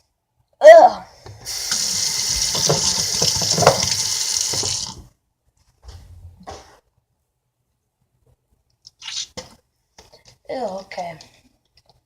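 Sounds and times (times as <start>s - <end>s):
water running from a tap: 1.5s - 5.0s.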